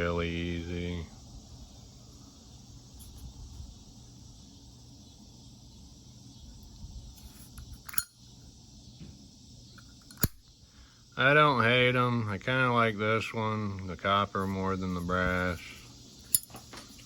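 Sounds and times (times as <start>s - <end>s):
faint steady background hum: 0.0s - 17.0s
sharp metal clicks: 7.8s - 8.2s, 9.8s - 10.5s.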